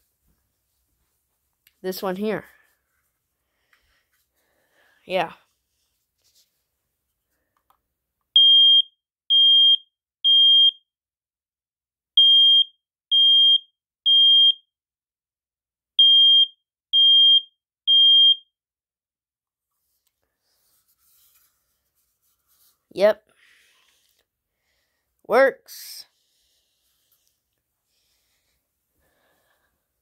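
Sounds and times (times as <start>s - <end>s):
smoke alarm beeps: 8.4s - 10.8s, 12.2s - 14.7s, 16.0s - 18.5s.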